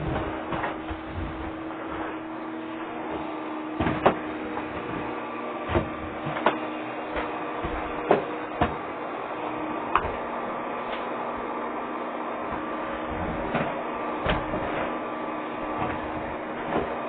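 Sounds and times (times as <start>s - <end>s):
vacuum cleaner humming: 0.0s - 17.0s.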